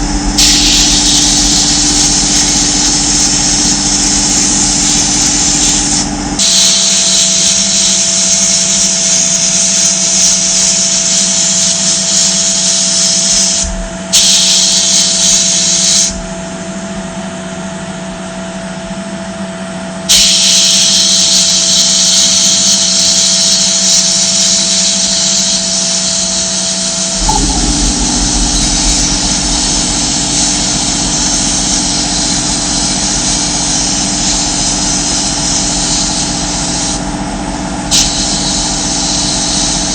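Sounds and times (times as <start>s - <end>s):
loud hiss: 0.0s - 16.2s, 20.1s - 39.9s
power tool motor hum: 0.0s - 16.2s.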